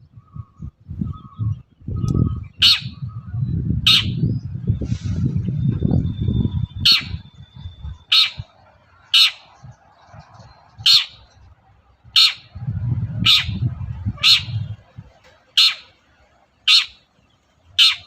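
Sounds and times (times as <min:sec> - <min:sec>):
low rumbling noise: 0:00.0 - 0:17.8
bird giving harsh rasping calls: 0:02.6 - 0:03.0, 0:03.9 - 0:04.2, 0:06.8 - 0:07.2, 0:08.0 - 0:09.6, 0:10.8 - 0:11.3, 0:12.1 - 0:12.6, 0:13.2 - 0:14.8, 0:15.4 - 0:16.0, 0:16.6 - 0:17.1, 0:17.7 - 0:18.0.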